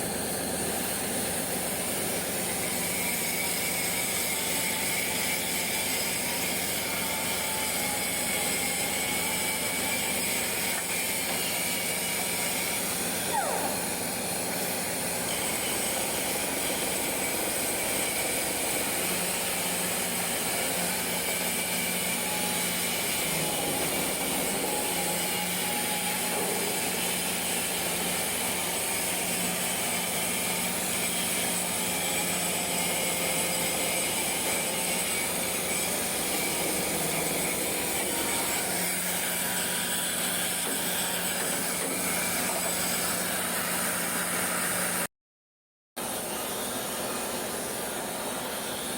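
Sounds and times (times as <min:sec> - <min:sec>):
machine hum: 0:12.8 - 0:16.9.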